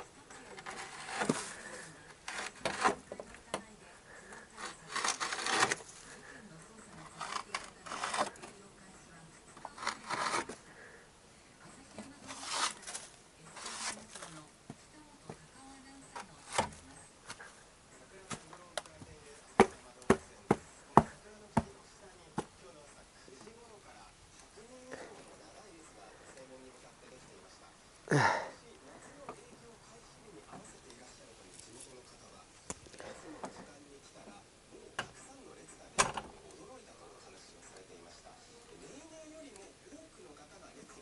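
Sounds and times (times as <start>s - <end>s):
rubbing and scraping: 0.0s - 3.6s, 4.2s - 8.7s, 9.5s - 10.6s, 11.9s - 14.4s.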